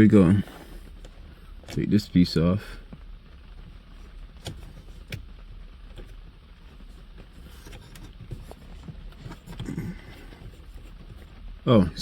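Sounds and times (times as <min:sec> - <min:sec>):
low steady hum: 0:00.0 - 0:12.0.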